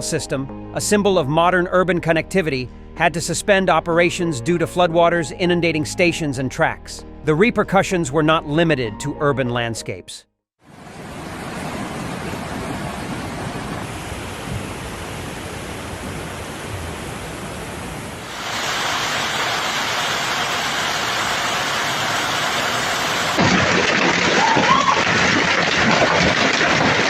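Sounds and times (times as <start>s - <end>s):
steady rushing noise: 17.9s - 23.4s.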